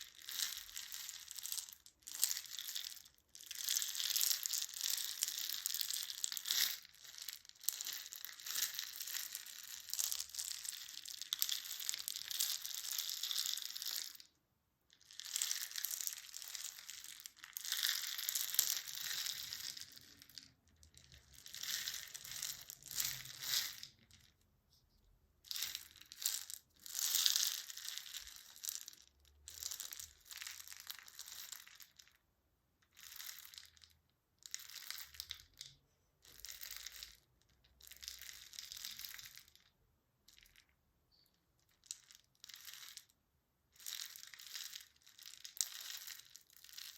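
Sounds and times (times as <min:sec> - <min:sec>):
material crinkling and crushing: 0:15.0 - 0:24.4.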